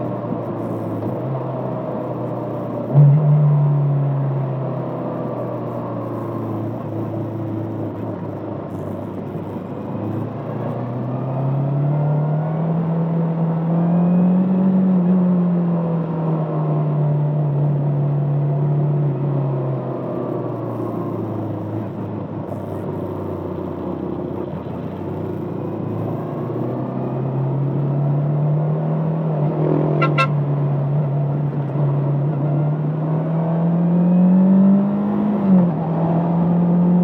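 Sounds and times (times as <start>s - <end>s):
motorcycle engine revving: 20.6s - 30.4s.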